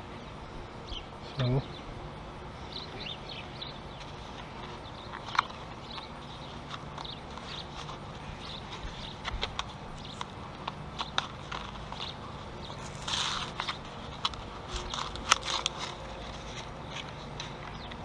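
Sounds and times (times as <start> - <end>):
packaging crinkling: 4.1 - 18.0.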